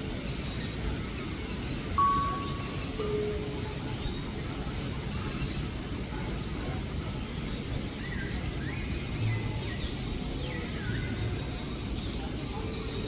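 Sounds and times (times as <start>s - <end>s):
whistled bird calls: 2.0s - 4.1s.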